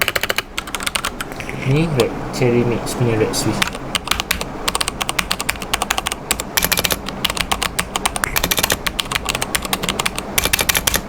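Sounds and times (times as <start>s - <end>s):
mechanical keyboard typing: 0.0s - 1.2s, 3.6s - 11.0s.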